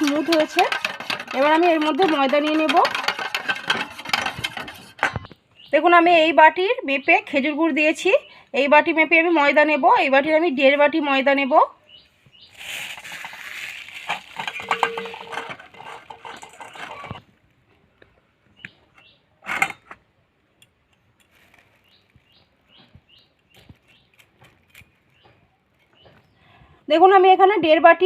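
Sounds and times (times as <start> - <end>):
flour rustling and scraping: 12.5 - 15.2
bowl clinking: 13.1 - 17.2.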